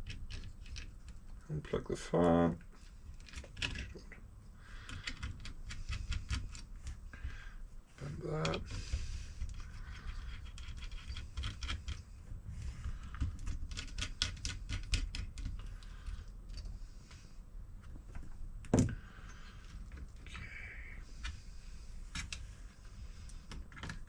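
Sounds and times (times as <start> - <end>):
clicks and taps on laptop parts: 13.1 - 15.9.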